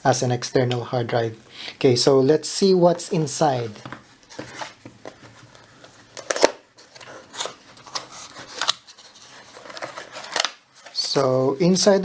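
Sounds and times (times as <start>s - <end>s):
cardboard packaging rustling and clicking: 3.8s - 11.3s.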